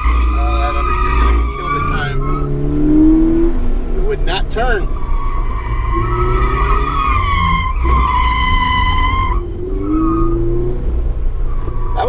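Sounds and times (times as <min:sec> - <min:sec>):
tyres squealing: 0:00.0 - 0:02.6, 0:04.3 - 0:10.6, 0:11.4 - 0:12.0
car engine from inside cabin: 0:00.0 - 0:12.0.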